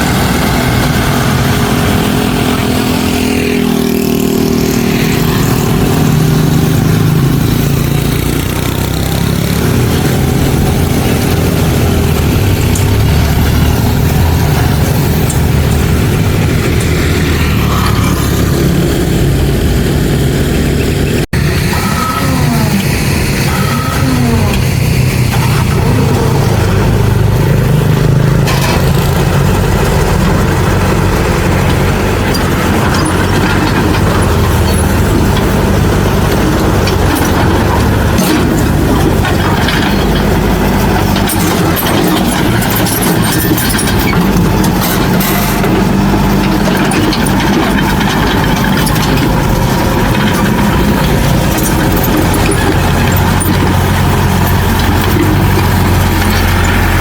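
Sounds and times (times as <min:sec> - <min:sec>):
diesel engine running: 0:00.0 - 0:57.0
metal clanks: 0:28.0 - 0:57.0.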